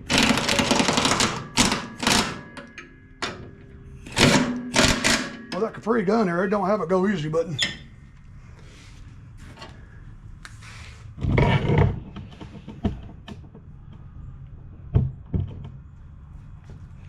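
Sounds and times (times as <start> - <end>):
tools and metal parts clanking: 0.0 - 6.2.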